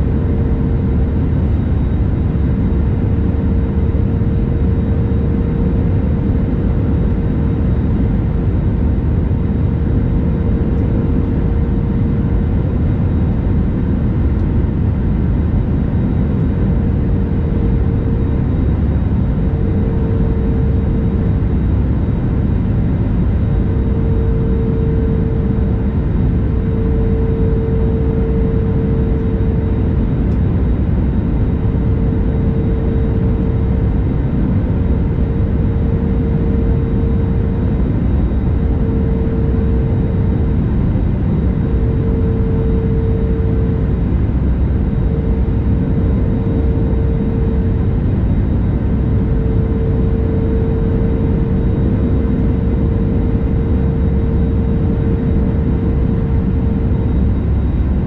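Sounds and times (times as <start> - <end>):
airliner cabin rumble: 0.0 - 58.0.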